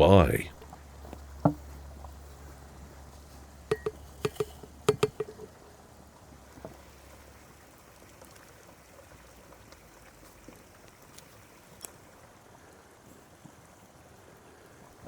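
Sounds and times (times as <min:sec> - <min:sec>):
small hard objects clinking: 0:03.7 - 0:05.5.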